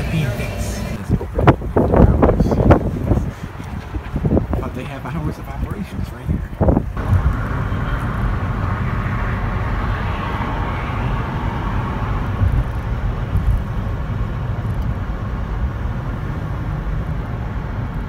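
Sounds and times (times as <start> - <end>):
vehicle passing: 0.0 - 5.0, 6.6 - 14.5
traffic rumble: 0.0 - 18.0.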